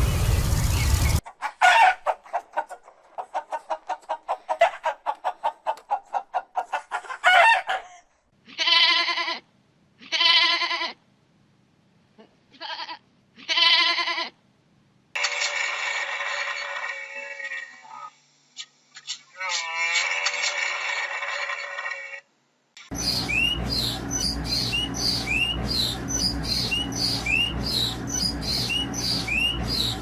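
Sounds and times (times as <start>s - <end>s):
chicken clucking: 1.2s - 8.0s
chicken squawk: 1.3s - 8.0s, 15.2s - 22.2s.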